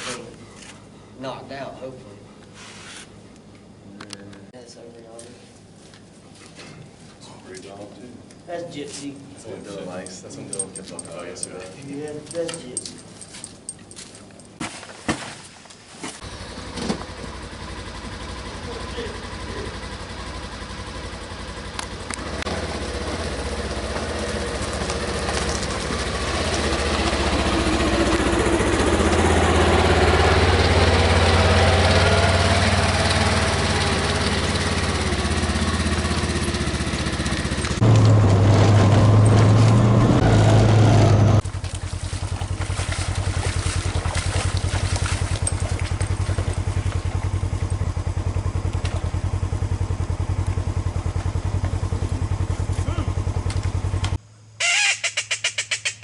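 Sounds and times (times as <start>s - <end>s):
vehicle engine running: 16.2s - 54.6s.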